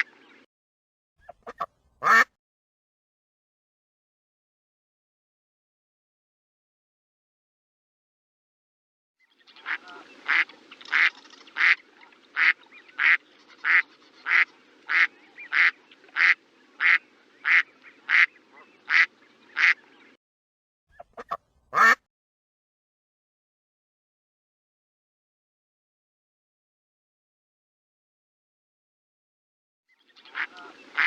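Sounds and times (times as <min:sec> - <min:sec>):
duck quacking: 0:01.2 - 0:02.3, 0:09.6 - 0:19.8, 0:20.9 - 0:22.0, 0:30.3 - 0:31.0.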